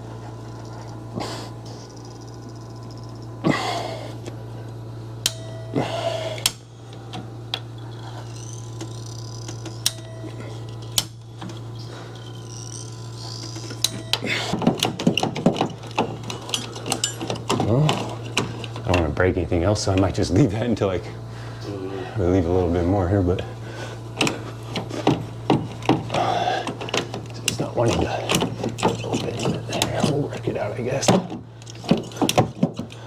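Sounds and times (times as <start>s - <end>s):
steady low hum: 0.0s - 33.0s
hand tools clinking on drain pipe: 13.8s - 19.0s.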